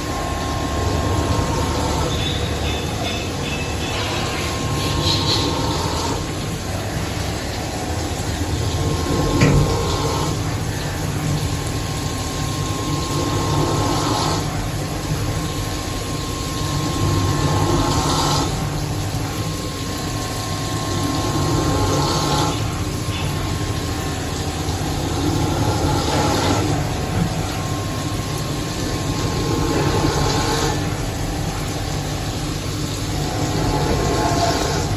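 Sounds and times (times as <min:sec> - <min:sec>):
cnc machine drone: 0:00.0 - 0:34.9.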